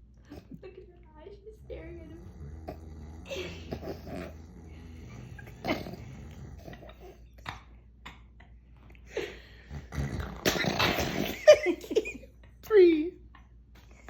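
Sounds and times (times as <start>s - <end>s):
puppy snoring: 1.4s - 7.3s, 9.6s - 11.5s.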